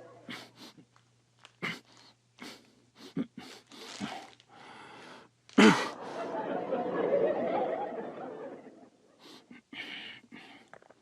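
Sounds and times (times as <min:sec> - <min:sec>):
audience laughter: 0:05.8 - 0:09.2.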